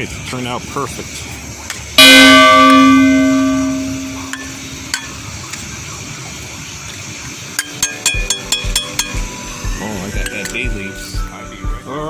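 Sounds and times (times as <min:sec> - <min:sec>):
metal cooking pot clanging: 0:02.0 - 0:05.3, 0:07.5 - 0:09.4, 0:10.2 - 0:10.6.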